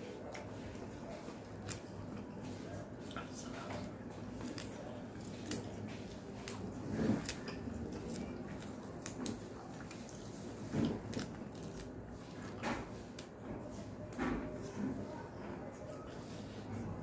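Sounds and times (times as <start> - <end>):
wet chewing: 0.0 - 13.4.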